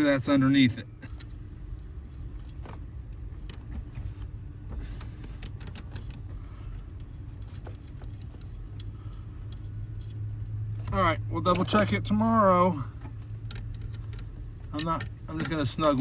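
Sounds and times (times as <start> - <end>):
steady low hum: 0.0 - 16.0
small metallic clicks and rattles: 2.3 - 12.0, 13.0 - 16.0.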